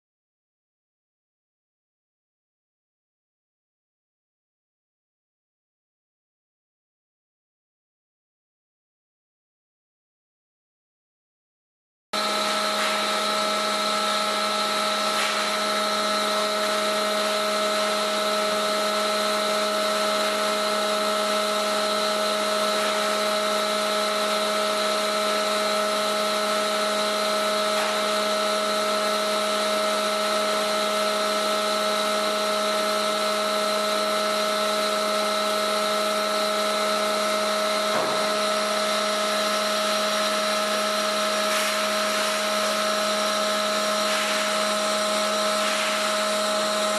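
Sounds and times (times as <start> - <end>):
welding equipment humming: 12.2 - 46.9.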